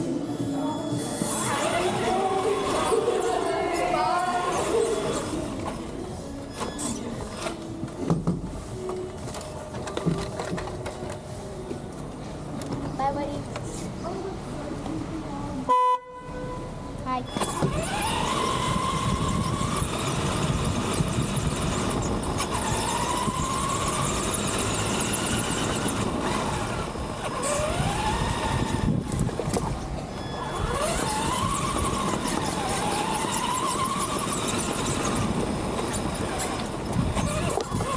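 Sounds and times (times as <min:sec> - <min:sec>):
electric motor whining: 0:01.1 - 0:06.0, 0:17.5 - 0:29.4, 0:30.4 - 0:37.9
rush of moving car: 0:16.4 - 0:37.9.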